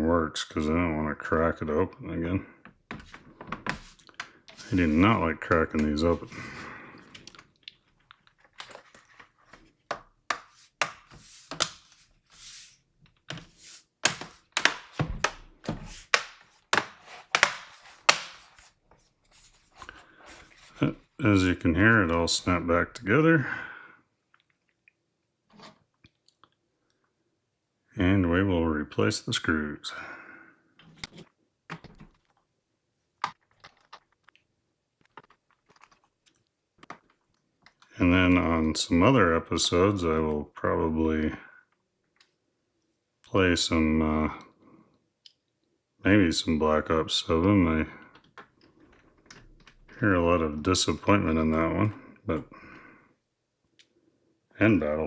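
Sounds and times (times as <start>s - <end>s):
plastic rubbing: 2.9s - 20.9s
plastic clips snapping: 14.0s - 15.4s.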